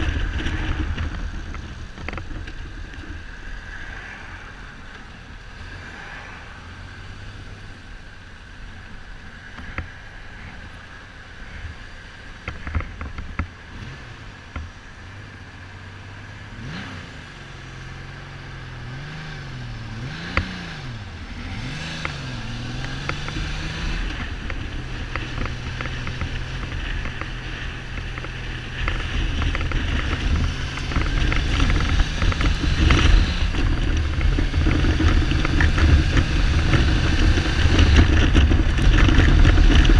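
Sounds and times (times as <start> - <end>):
helmet rattle clicks: 0.0 - 5.1.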